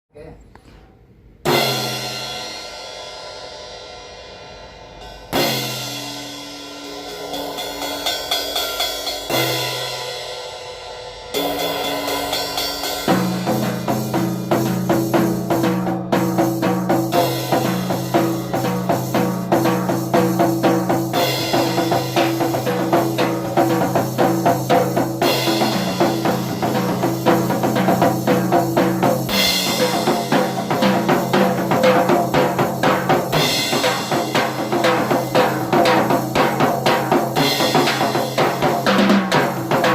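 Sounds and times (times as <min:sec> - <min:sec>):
cymbal crashes: 0:01.5 - 0:39.9
tom drum strokes: 0:11.4 - 0:39.9.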